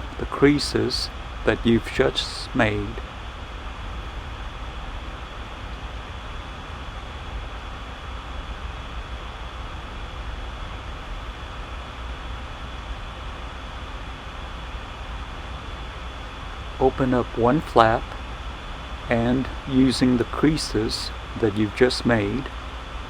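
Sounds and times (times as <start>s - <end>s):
background hiss: 0.0s - 4.2s, 13.9s - 23.0s
low hum: 0.0s - 23.0s.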